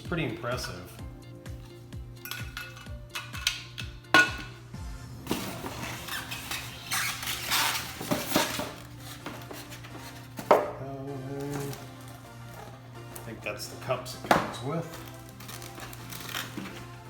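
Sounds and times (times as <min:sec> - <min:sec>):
background music: 0:00.0 - 0:17.0
hard part clinking down: 0:02.2 - 0:04.6
packaging rustling: 0:05.3 - 0:10.6, 0:11.3 - 0:17.0.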